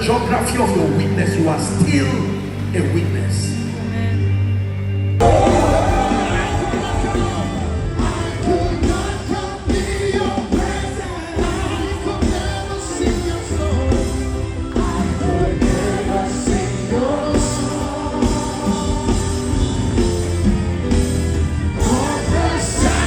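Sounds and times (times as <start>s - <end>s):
live worship band: 0.0s - 23.0s
people singing: 5.2s - 21.1s, 21.7s - 23.0s.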